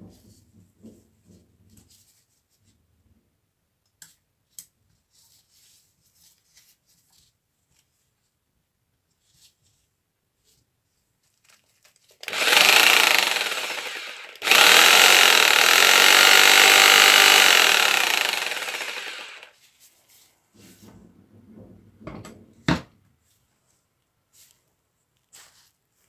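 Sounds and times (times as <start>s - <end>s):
jigsaw motor running: 12.2s - 19.5s.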